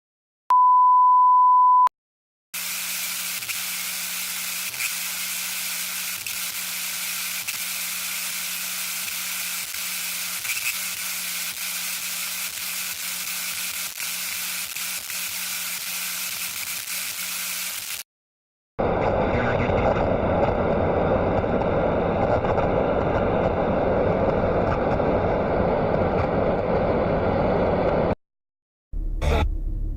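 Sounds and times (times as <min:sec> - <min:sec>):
steady single-pitch beep: 0:00.5 - 0:01.9
static hiss with crackles: 0:02.6 - 0:18.0
low hum: 0:29.0 - 0:29.9.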